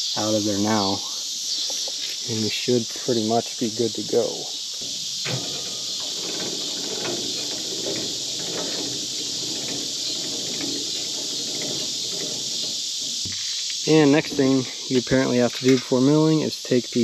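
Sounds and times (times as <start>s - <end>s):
high-pitched insect chorus: 0.0s - 17.0s
handling knocks and scrapes: 3.1s - 16.0s.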